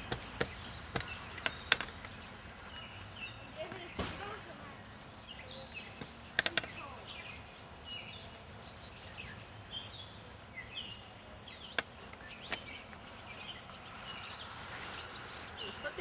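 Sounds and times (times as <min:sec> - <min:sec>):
birds chirping: 0:00.0 - 0:16.0
sharp clicks: 0:05.5 - 0:06.9.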